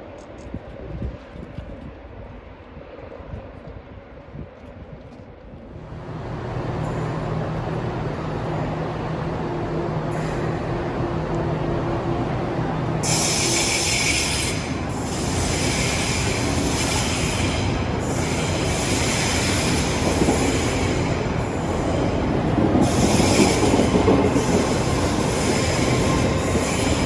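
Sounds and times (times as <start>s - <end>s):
train rumbling: 0.0s - 27.0s
train wheels squealing: 13.0s - 27.0s.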